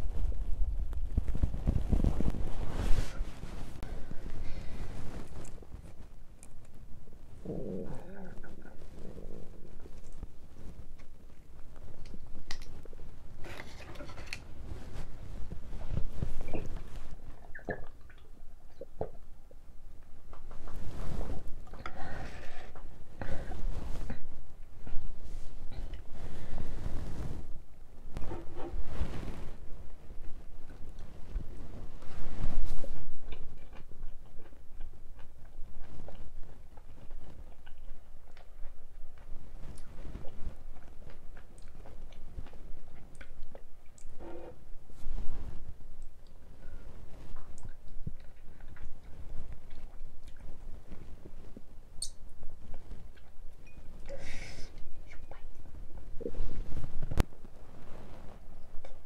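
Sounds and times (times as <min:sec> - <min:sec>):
stomach gurgling and rumbling: 0:00.0 - 0:59.0
stomach gurgling: 0:07.1 - 0:29.6.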